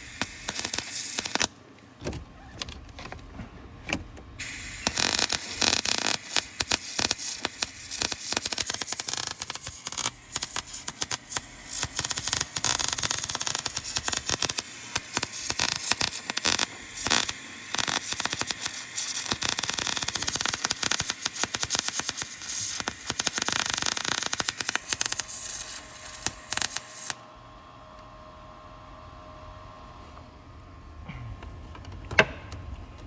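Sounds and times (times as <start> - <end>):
welding arc crackling: 0.0 - 1.6, 4.4 - 27.2.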